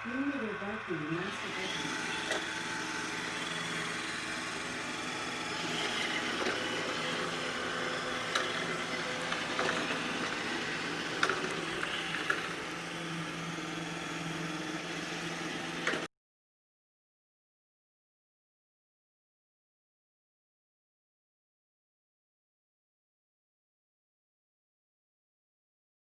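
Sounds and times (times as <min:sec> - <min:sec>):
robot vacuum motor and brush whir: 0:00.0 - 0:16.1.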